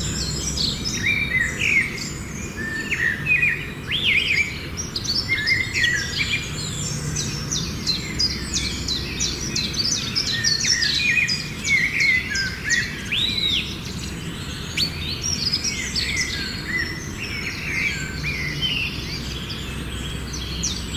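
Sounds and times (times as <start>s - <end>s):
birds chirping and whistling: 0.0s - 20.9s.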